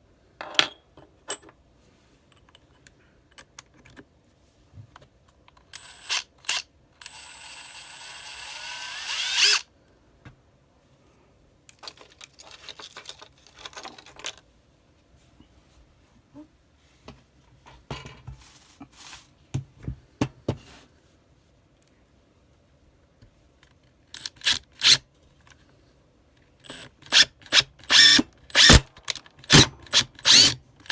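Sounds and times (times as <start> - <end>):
handling clatter: 11.8 - 14.4
impact driver running: 26.7 - 28.8, 29.5 - 30.6.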